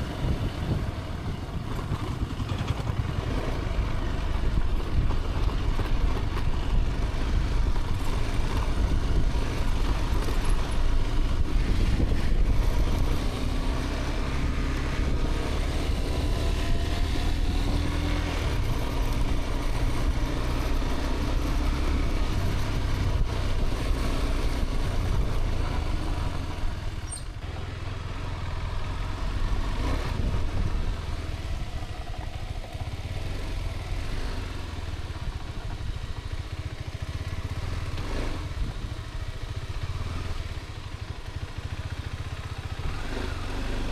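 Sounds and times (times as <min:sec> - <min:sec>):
wind noise on microphone: 0:00.0 - 0:27.4, 0:29.3 - 0:32.6
motorcycle engine running: 0:00.0 - 0:43.9.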